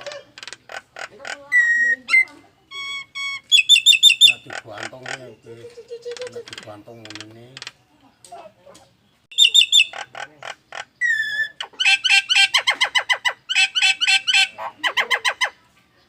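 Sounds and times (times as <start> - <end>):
bird whistling call: 1.6 - 4.5, 9.3 - 10.0, 11.0 - 15.6.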